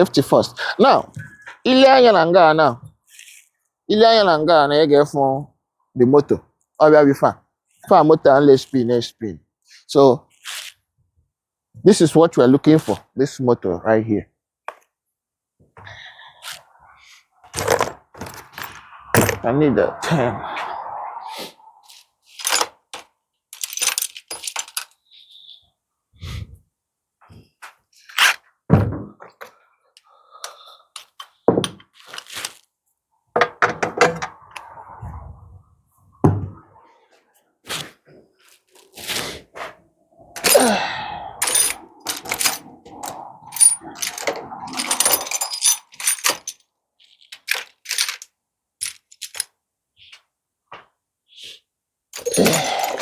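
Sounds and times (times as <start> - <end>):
metal hand tools clinking: 22.3 - 22.7, 23.6 - 25.0, 40.4 - 49.5, 52.2 - 53.0.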